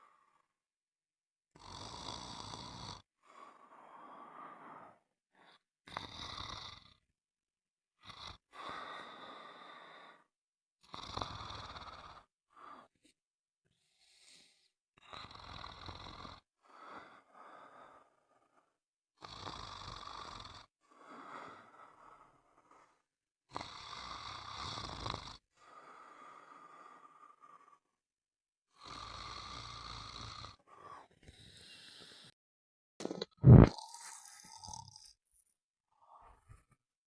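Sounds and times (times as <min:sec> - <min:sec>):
person snoring: 0:01.6 - 0:03.7, 0:05.9 - 0:07.0, 0:10.9 - 0:12.9, 0:22.6 - 0:27.9, 0:28.7 - 0:32.4, 0:33.0 - 0:35.2.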